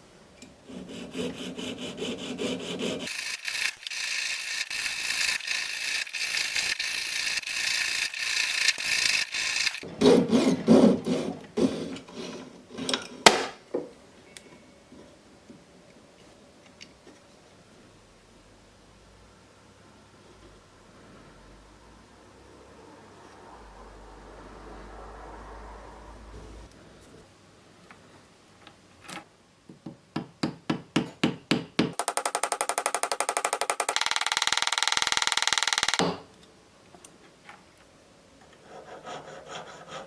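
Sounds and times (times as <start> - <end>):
hand tool rasping on metal: 0.7 - 9.8.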